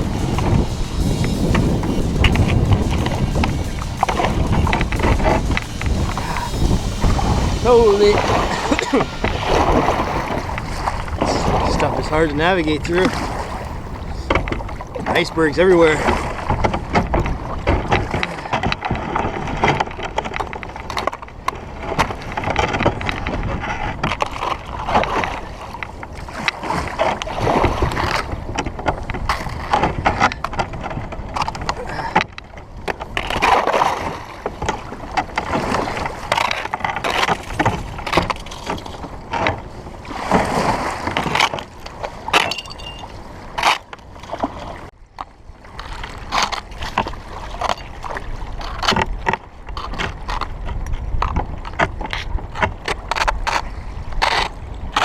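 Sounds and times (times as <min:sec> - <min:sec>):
water splashing: 0:00.0 - 0:22.5, 0:33.0 - 0:50.6
kayak paddle strokes: 0:00.0 - 0:55.0.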